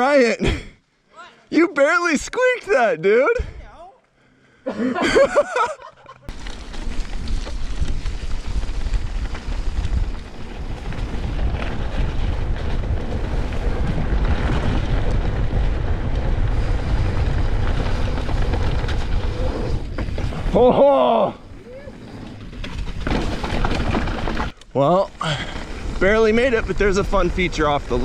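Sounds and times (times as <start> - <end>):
bike rolling on dirt trail: 5.1 - 28.0
wind buffeting microphone: 6.5 - 20.6.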